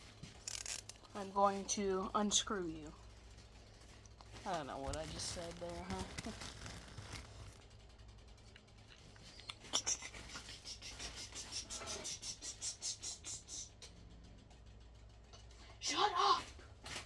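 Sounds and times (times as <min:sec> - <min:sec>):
screwdriver scraping: 0:00.4 - 0:01.0.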